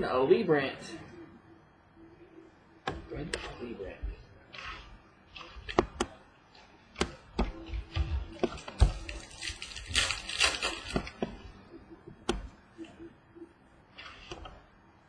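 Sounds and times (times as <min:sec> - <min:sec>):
cards clicking and tapping: 0:04.6 - 0:06.2
papery rustle of cards: 0:08.4 - 0:11.3.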